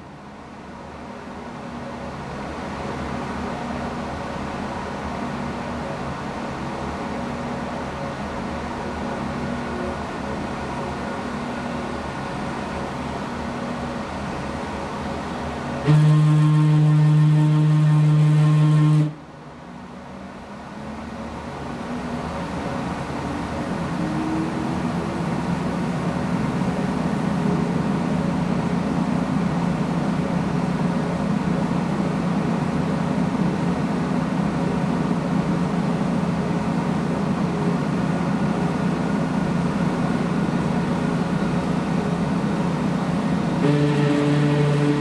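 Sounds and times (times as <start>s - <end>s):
ct scanner whirring hum: 43.6s - 45.0s.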